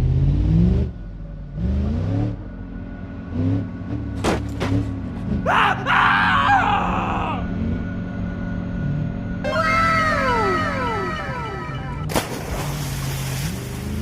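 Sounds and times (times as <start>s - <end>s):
wavering high cry-like sound: 9.4s - 12.1s.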